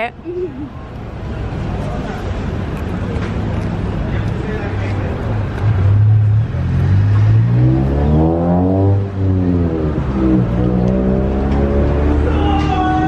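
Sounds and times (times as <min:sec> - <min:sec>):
vehicle engine accelerating: 0:05.1 - 0:12.8.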